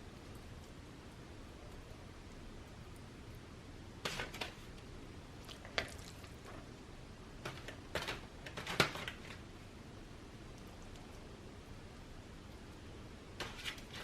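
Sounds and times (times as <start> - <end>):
kitchen utensil tapping and scraping: 13.4 - 14.0.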